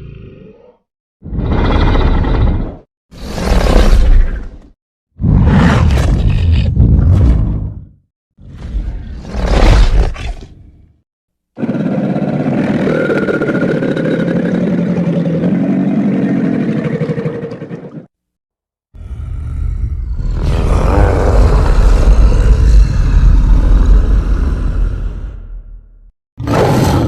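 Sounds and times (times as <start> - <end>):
monster roar: 19.0 - 25.8, 26.4 - 27.0.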